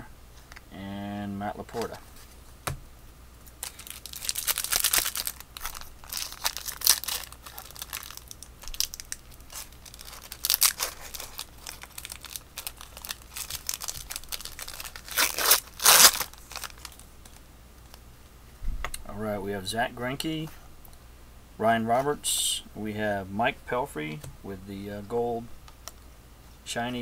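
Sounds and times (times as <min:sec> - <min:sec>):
wrapper crinkling: 0:03.5 - 0:18.0
card pack wrapper tearing: 0:03.6 - 0:17.4.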